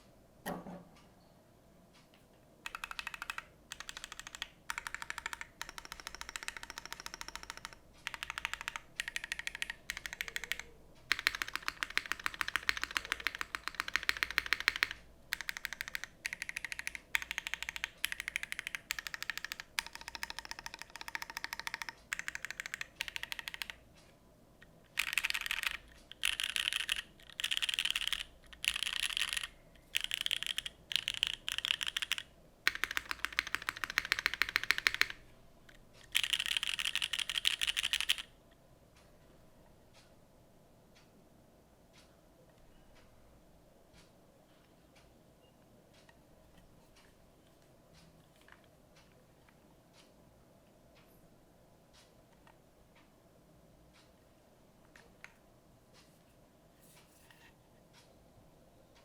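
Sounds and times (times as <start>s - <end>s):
mechanical keyboard typing: 2.6s - 23.9s, 24.6s - 35.3s, 36.0s - 38.4s.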